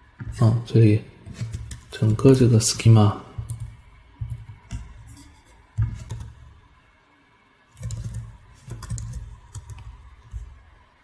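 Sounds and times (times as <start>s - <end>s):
typing on computer keyboard: 3.4s - 6.5s, 7.8s - 10.5s.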